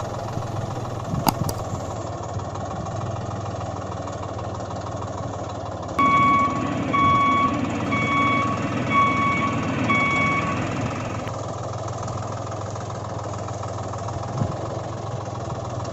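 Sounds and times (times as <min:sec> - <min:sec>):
engine idling hum: 0:00.0 - 0:15.9
vehicle reversing alarm beeps: 0:06.0 - 0:11.3.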